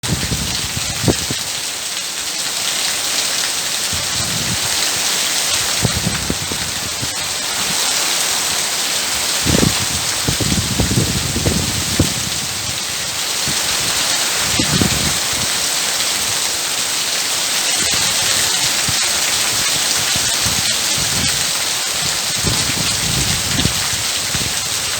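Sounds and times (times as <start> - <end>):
steady rain hiss: 0.0 - 24.9
heavy raindrops knocking: 3.9 - 16.4, 17.6 - 24.9.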